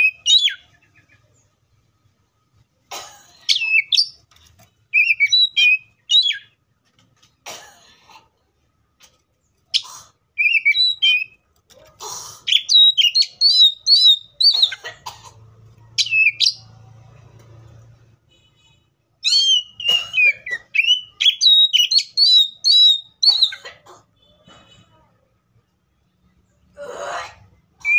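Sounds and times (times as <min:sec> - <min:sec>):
bird singing whistled notes: 0:04.9 - 0:06.5, 0:10.4 - 0:11.4, 0:12.5 - 0:14.6, 0:16.0 - 0:16.7, 0:19.2 - 0:23.5.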